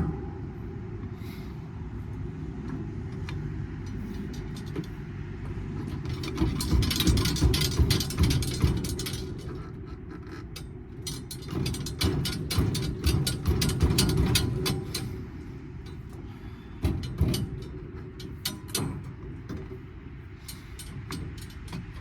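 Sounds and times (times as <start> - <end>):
metal clanks and knocks: 0.0 - 1.2, 2.6 - 22.0
steady low rumble: 0.0 - 9.8.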